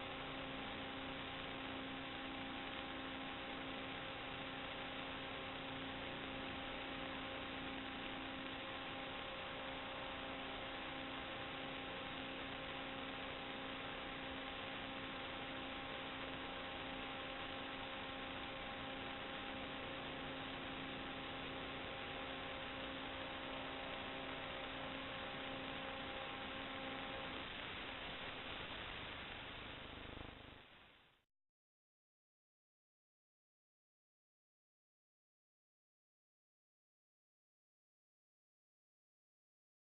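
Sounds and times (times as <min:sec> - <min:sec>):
faint steady tone: 0:00.0 - 0:31.2
hiss and hum: 0:00.0 - 0:31.2.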